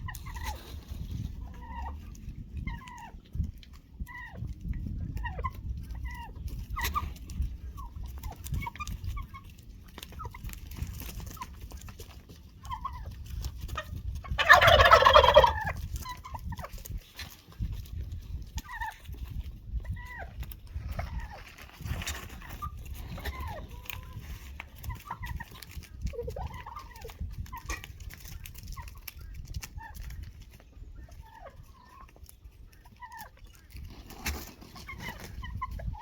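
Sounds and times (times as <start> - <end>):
poultry calling: 12.4 - 17.4, 19.9 - 36.0.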